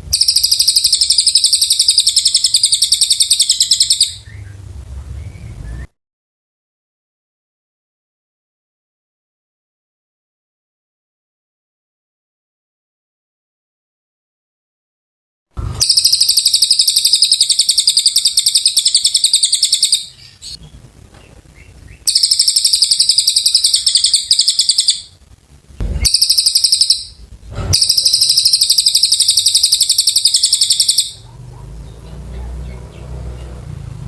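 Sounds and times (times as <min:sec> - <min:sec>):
faint low hum: 0:00.0 - 0:05.9, 0:18.9 - 0:34.0
songbird chattering trills: 0:00.0 - 0:05.9, 0:15.6 - 0:25.2, 0:25.8 - 0:34.0.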